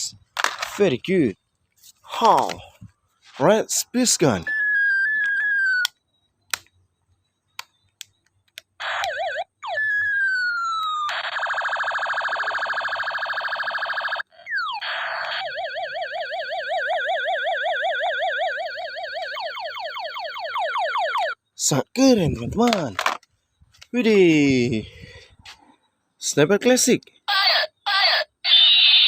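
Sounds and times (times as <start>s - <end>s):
siren-like warble: 4.4s - 5.9s, 8.8s - 21.4s.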